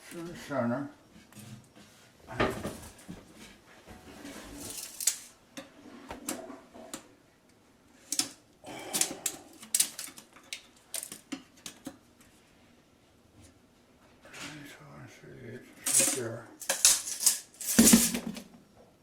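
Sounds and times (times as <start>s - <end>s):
small tools clicking and tapping: 8.1s - 12.0s, 15.9s - 18.2s.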